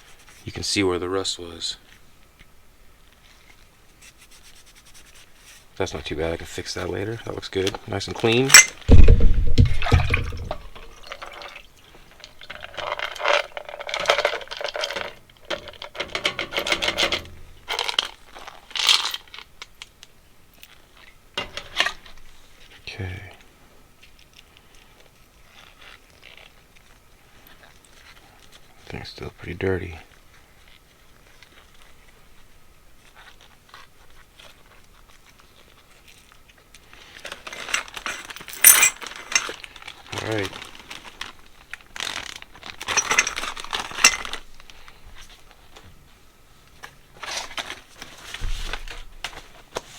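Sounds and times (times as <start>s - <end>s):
sharp crinkly scrape: 3.1s - 8.9s, 39.0s - 45.7s, 47.2s - 49.9s
crunching and scraping handling: 3.1s - 49.9s
small metal parts clinking: 8.2s - 20.0s, 20.6s - 22.4s, 37.2s - 41.3s, 42.0s - 44.5s.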